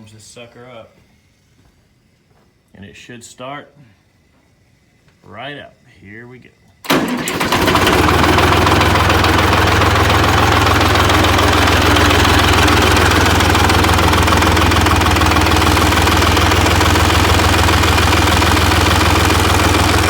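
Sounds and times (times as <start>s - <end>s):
diesel engine running loud: 6.9s - 20.0s.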